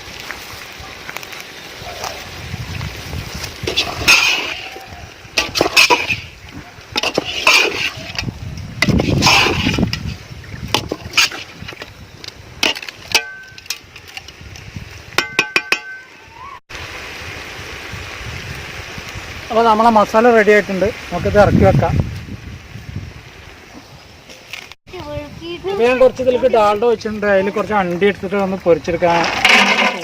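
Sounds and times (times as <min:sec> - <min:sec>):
spoon scraping in a pan: 0:03.6 - 0:04.8, 0:05.4 - 0:10.2, 0:10.8 - 0:11.8.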